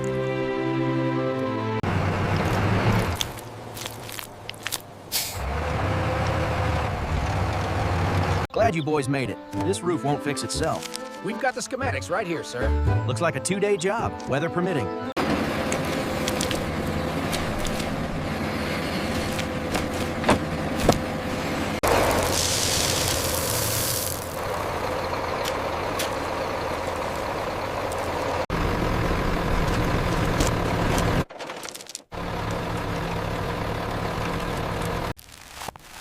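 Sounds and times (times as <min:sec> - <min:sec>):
truck engine rumbling: 0:00.0 - 0:35.2
air brake hiss: 0:05.1 - 0:05.4.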